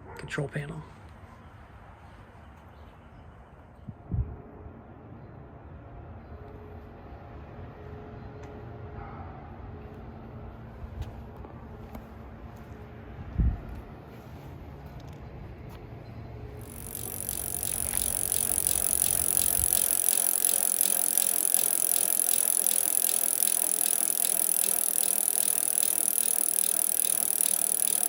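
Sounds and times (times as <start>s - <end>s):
rapid even ticking: 16.6s - 28.0s.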